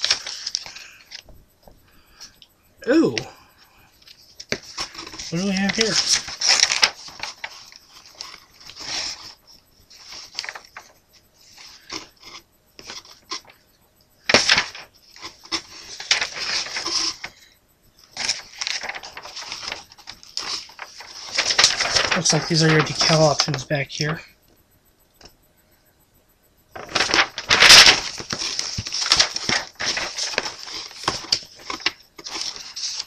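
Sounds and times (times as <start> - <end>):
paper sheets rustling: 0.0 - 1.3, 4.0 - 13.6, 14.3 - 17.4, 18.2 - 24.2, 26.8 - 33.0
plastic parts rustling and clicking: 4.0 - 10.9, 14.3 - 17.4, 18.1 - 24.0, 26.8 - 33.0.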